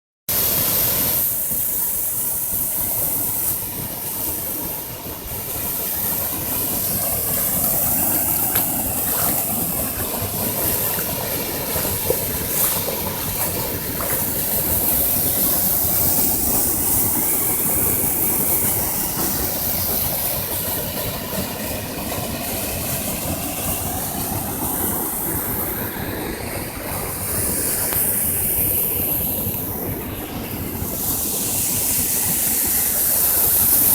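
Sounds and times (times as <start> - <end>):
waterfall rushing: 5.0 - 21.4.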